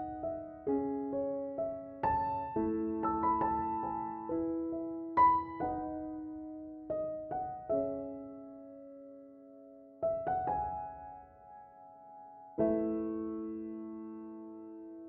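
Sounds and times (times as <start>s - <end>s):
slow piano chords: 0.0s - 15.0s.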